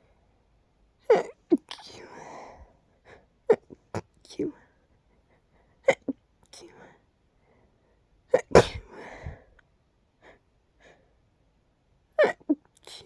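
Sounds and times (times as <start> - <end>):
person sneezing: 8.4 - 9.3
faint short breaths: 8.8 - 9.6.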